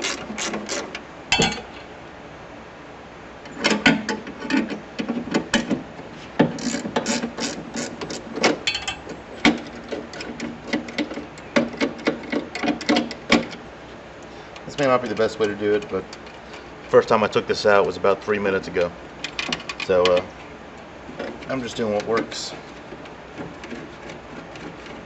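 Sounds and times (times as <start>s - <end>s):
steel parts knocking: 0.0s - 1.7s.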